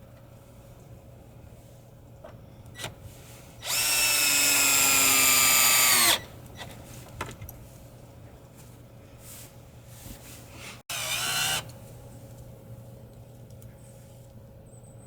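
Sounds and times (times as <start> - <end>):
power drill whining: 3.6 - 6.3, 10.9 - 11.7.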